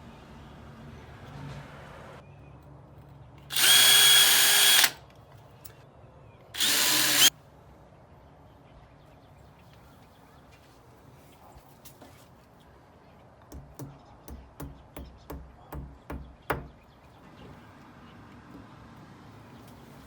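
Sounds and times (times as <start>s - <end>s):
power drill running: 3.5s - 5.0s, 6.6s - 7.3s.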